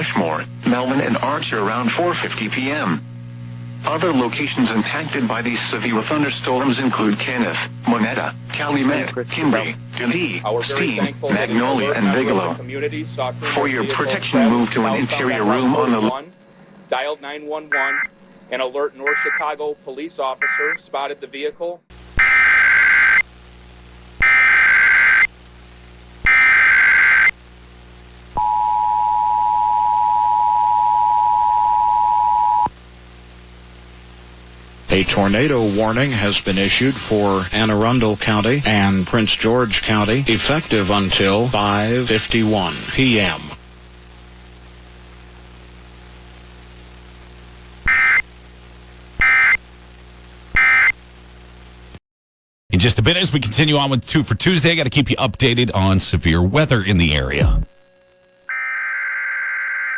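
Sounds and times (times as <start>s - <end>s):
steady hum and hiss: 0.0s - 22.1s, 52.7s - 58.5s
warbling digital data bursts: 13.4s - 21.5s, 56.9s - 59.9s
short data tone bursts: 16.9s - 21.4s
two-tone attention signal: 17.7s - 18.1s.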